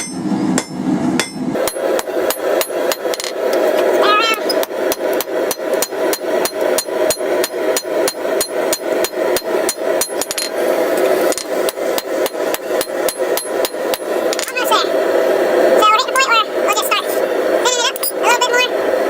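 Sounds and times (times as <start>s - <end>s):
hammer ringing on anvil: 0.0s - 1.4s.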